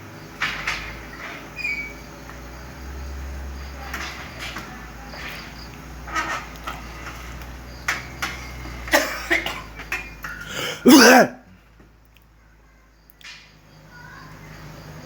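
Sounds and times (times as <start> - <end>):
person coughing: 9.0 - 9.6, 10.5 - 11.4.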